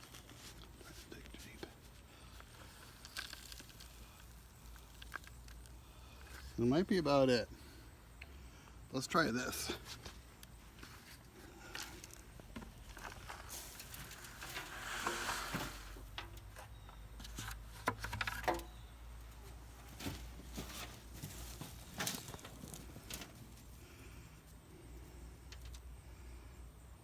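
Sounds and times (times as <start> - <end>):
hands rummaging through soil: 0.0 - 6.6, 9.8 - 24.5
small knocks: 15.0 - 18.9.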